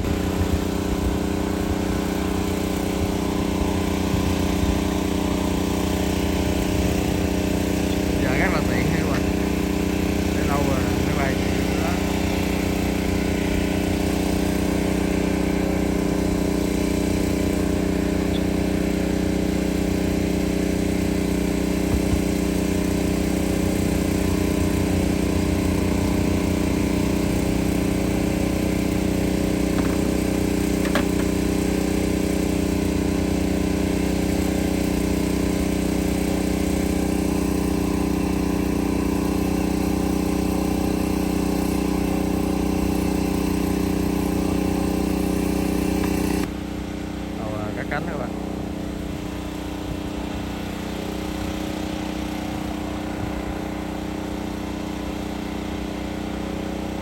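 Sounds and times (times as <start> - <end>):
drone rotors humming: 0.0 - 33.7.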